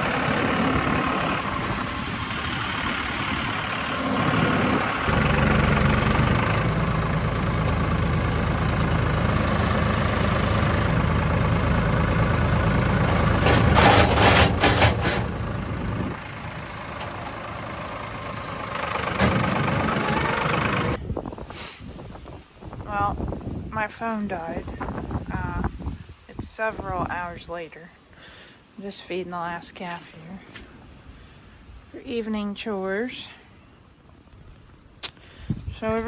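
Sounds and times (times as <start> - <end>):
vehicle engine running: 0.0 - 21.0.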